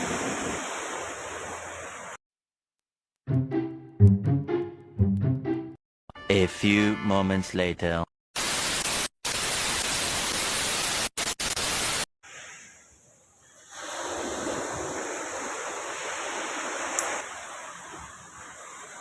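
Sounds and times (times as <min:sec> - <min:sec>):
wind: 0:00.0 - 0:02.2, 0:12.2 - 0:19.0
loud static hiss: 0:08.4 - 0:12.0.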